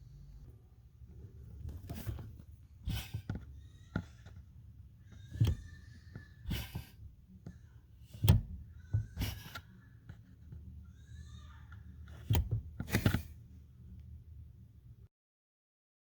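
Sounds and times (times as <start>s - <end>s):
rustling handling noises: 1.1s - 10.8s.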